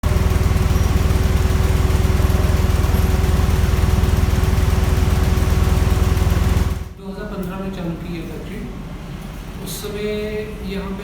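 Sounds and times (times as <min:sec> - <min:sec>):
machinery throbbing and humming: 0:00.0 - 0:06.9.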